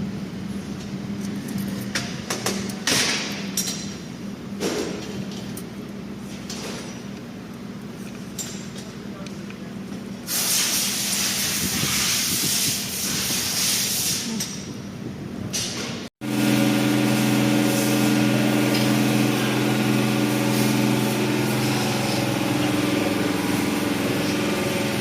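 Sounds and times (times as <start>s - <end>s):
loud air hiss: 10.3s - 14.4s.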